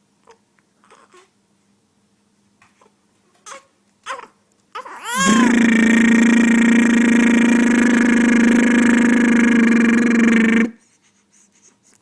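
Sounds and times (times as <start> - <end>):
man making lip trill: 5.2 - 10.8.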